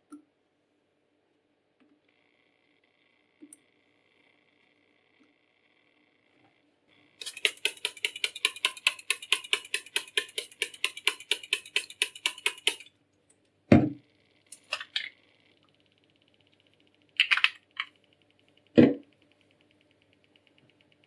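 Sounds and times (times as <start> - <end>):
razor scraping on sharpening stone: 7.2 - 12.9.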